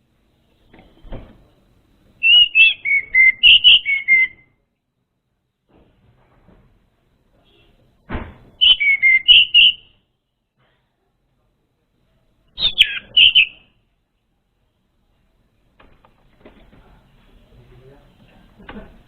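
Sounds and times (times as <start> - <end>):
thrush whistled song: 2.2 - 4.6, 8.6 - 10.0, 12.6 - 13.8
dull thump: 8.1 - 8.6.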